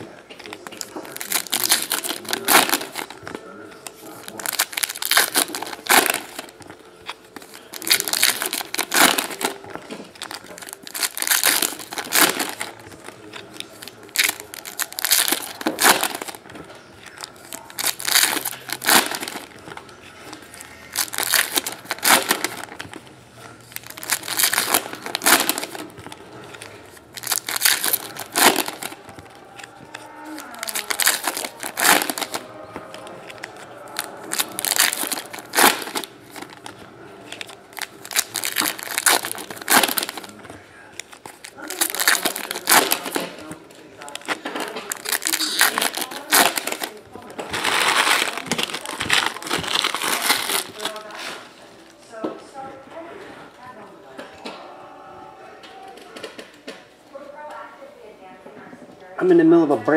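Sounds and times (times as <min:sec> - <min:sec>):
foil wrappers tearing and crinkling: 0:00.3 - 0:51.5.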